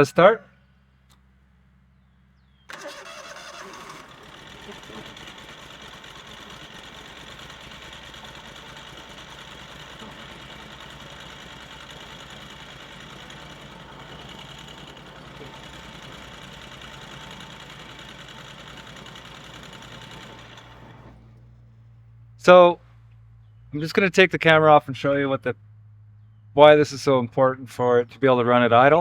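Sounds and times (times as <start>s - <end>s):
engine idling roughly: 2.7s - 22.3s.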